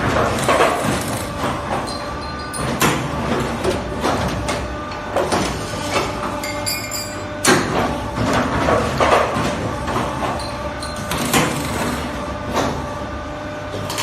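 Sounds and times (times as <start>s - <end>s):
machine motor hum: 7.2s - 14.0s.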